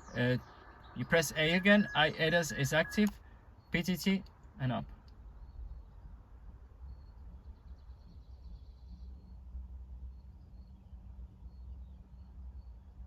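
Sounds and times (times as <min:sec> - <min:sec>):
faint high chirping: 0:00.0 - 0:03.9.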